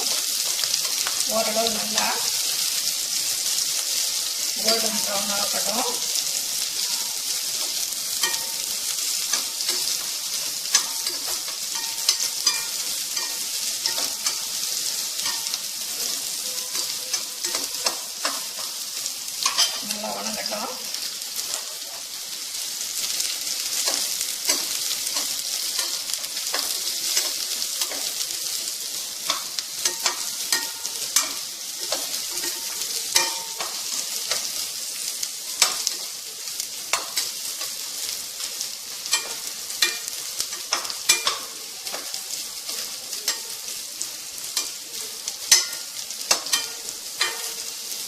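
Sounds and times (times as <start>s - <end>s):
onion sizzling in oil: 0.0s - 48.0s
spoon clicking against pan: 6.8s - 15.7s, 16.7s - 18.8s, 19.4s - 19.8s, 23.8s - 28.2s, 29.2s - 34.6s, 35.5s - 36.2s, 36.9s - 37.8s, 39.0s - 43.7s, 45.4s - 47.7s.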